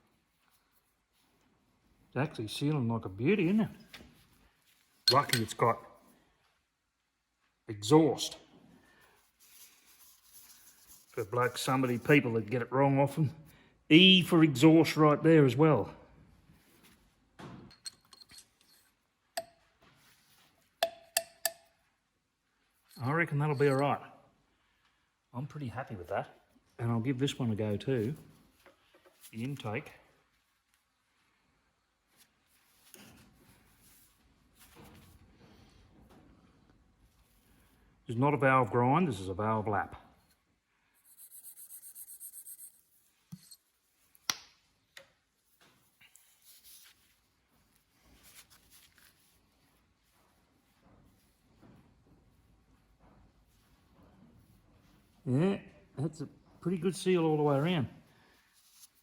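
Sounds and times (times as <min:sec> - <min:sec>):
soft rustle: 0:00.0 - 0:02.8, 0:03.6 - 0:07.6, 0:08.4 - 0:12.7, 0:16.4 - 0:17.4, 0:25.8 - 0:38.0, 0:45.2 - 0:59.0
steel engine parts clinking: 0:05.1 - 0:05.6.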